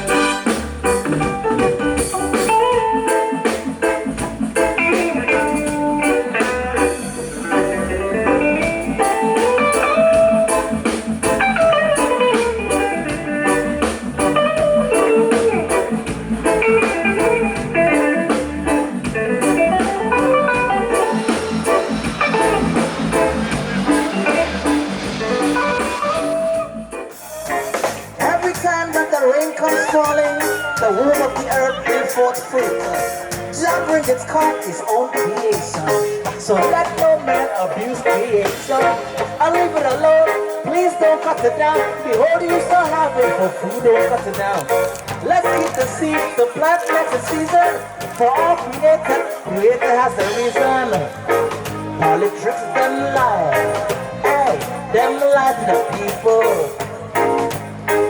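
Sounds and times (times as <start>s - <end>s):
instrumental guitar and drums music: 0.0s - 58.0s.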